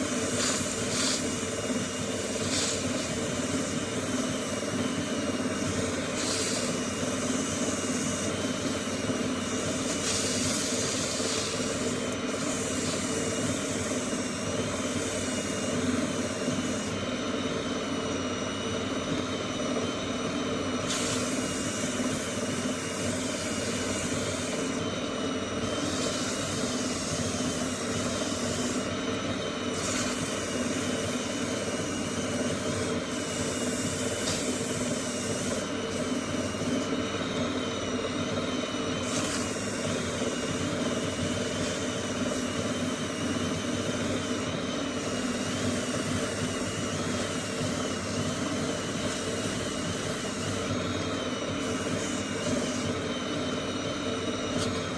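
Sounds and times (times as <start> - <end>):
tool cutting spinning wood: 0.0 - 17.1, 20.7 - 37.1
wood lathe motor running: 0.0 - 17.9.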